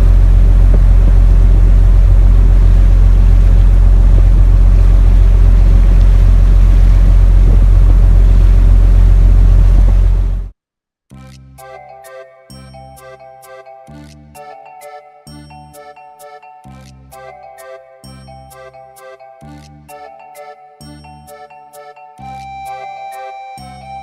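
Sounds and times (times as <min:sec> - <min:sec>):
boat engine drone: 0:00.0 - 0:10.5
wind noise: 0:00.0 - 0:10.5
chiming music jingle: 0:11.6 - 0:24.0.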